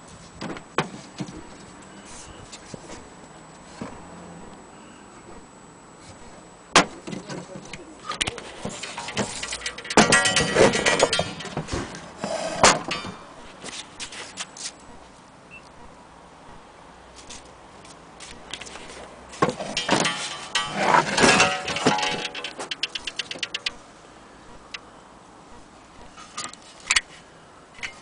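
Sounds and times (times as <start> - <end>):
metallic rattling and clinking: 8.4 - 13.2, 19.4 - 23.9
wall clock knocks and clicks: 19.4 - 23.8.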